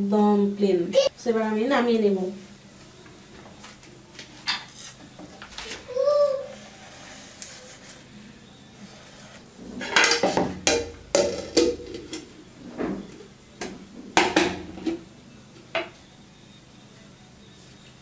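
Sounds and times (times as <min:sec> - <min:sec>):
steel kitchenware clattering: 0:09.7 - 0:15.0.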